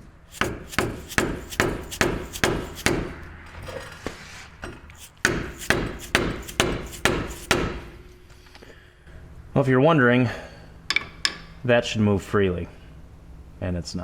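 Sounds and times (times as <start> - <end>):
hammer blows on steel: 0.4 - 3.2, 5.0 - 8.0.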